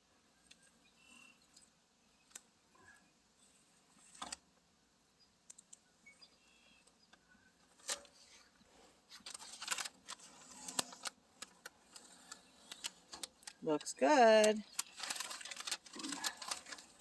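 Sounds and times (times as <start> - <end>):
masking tape peeling off: 9.1 - 13.6.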